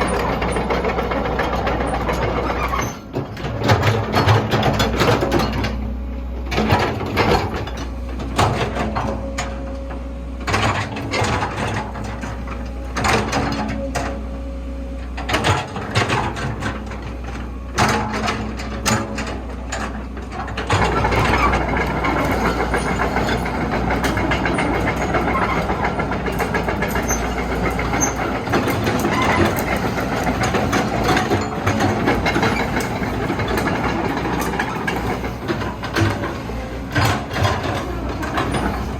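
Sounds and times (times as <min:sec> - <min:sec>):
continuous mechanical rattle: 0:00.0 - 0:38.9
excavator diesel engine humming: 0:00.0 - 0:38.9.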